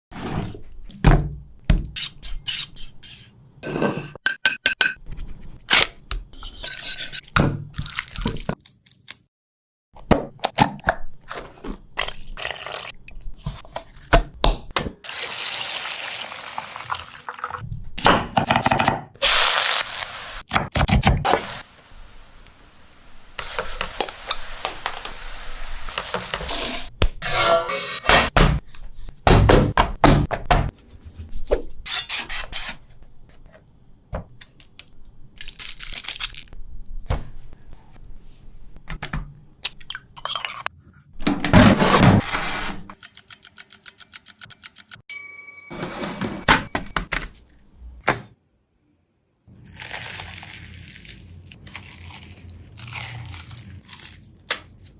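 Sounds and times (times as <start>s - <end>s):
utensils clinking against dishes: 6.4s - 7.3s, 24.0s - 25.2s.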